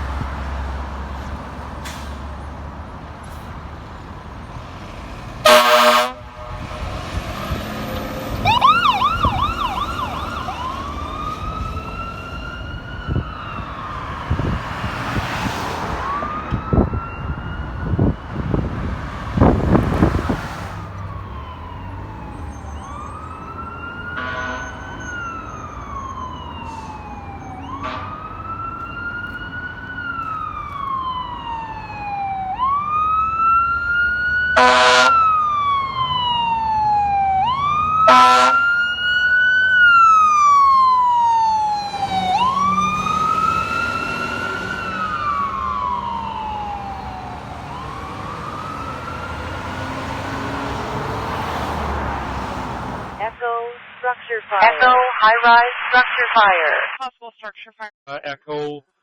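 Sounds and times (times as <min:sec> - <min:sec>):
fire truck siren wailing: 0:03.6 - 0:53.4
air horn blasts: 0:05.4 - 0:06.6, 0:24.2 - 0:24.9, 0:27.8 - 0:28.2, 0:34.6 - 0:35.2, 0:38.1 - 0:38.7.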